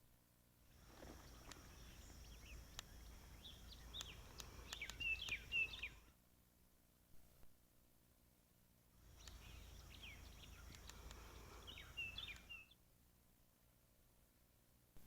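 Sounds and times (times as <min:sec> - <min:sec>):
high insect hum: 0:00.6 - 0:06.1, 0:09.0 - 0:12.8
light clicks: 0:01.0 - 0:01.7, 0:02.7 - 0:03.1, 0:03.8 - 0:05.9, 0:09.1 - 0:12.6
short bird chirps: 0:01.0 - 0:06.1, 0:09.1 - 0:12.8.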